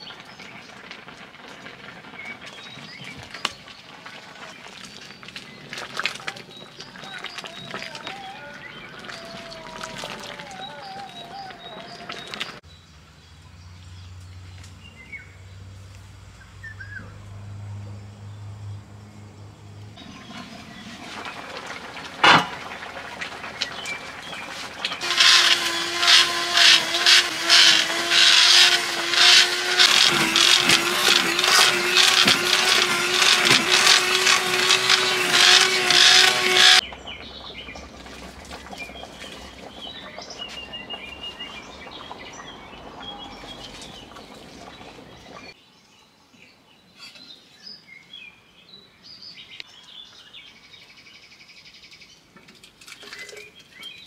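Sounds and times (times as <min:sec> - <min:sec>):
birds chirping faintly: 0:02.1 - 0:21.1, 0:23.5 - 0:52.3
small electric motor rattling: 0:24.4 - 0:36.8.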